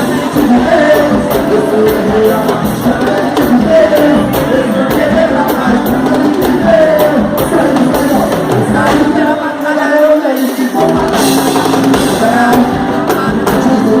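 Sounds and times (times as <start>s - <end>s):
upbeat praise music with singing: 0.0s - 14.0s.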